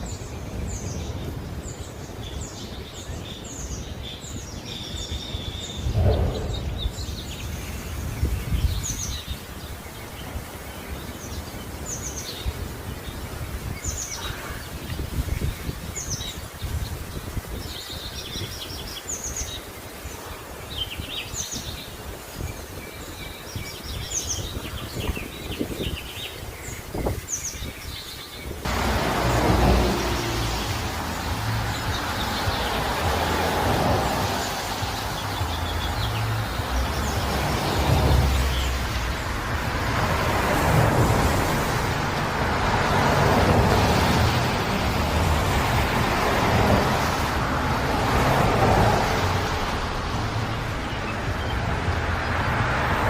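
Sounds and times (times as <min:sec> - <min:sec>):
birds chirping: 0:00.0 - 0:53.0
low rumble: 0:05.9 - 0:07.8.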